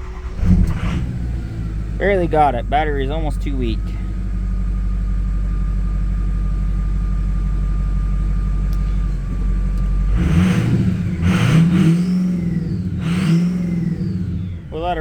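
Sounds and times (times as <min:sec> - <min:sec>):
engine revving with rush of air: 0:00.0 - 0:04.2, 0:08.7 - 0:15.0
diesel engine idling: 0:00.0 - 0:15.0.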